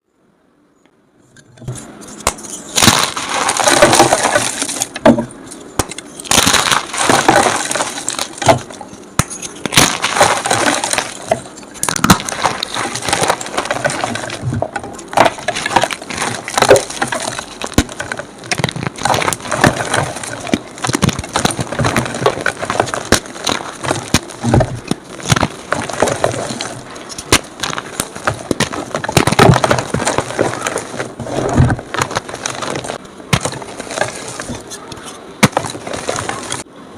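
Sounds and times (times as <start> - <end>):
chalk crunching and crackling: 1.7 - 36.6.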